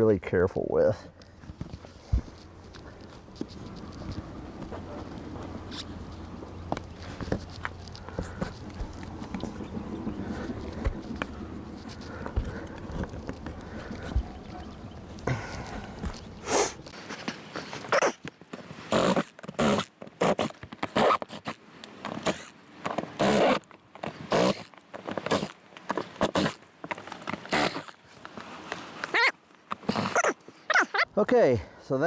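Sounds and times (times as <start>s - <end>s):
screws rasping and squeaking: 1.6s - 31.1s.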